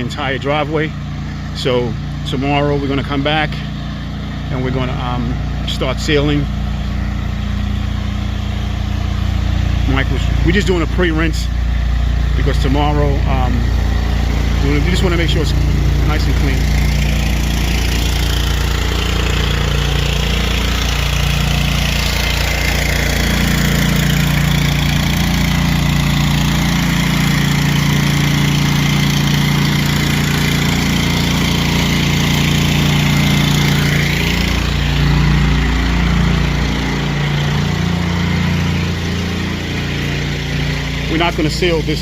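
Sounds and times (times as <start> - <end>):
pressure washer engine running: 0.0 - 42.0
water jet spraying: 2.9 - 42.0.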